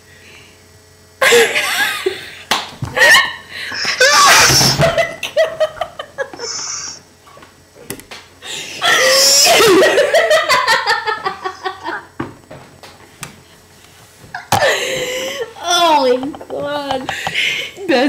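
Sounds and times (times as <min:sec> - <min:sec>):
hearty laughter: 0:01.2 - 0:02.4, 0:03.0 - 0:06.8, 0:08.6 - 0:12.2, 0:14.3 - 0:15.5.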